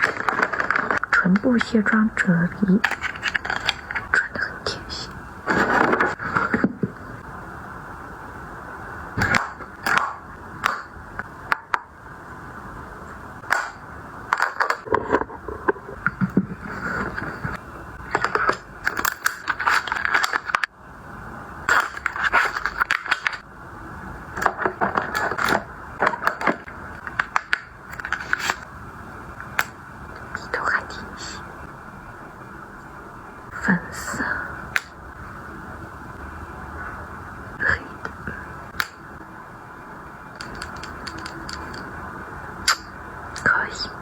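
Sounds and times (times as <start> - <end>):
packages clicking and scraping: 0.0 - 1.3, 2.8 - 4.2, 5.5 - 6.9, 16.6 - 20.7, 21.7 - 23.4, 24.4 - 28.7, 40.4 - 41.8
steady background hiss: 0.0 - 44.0.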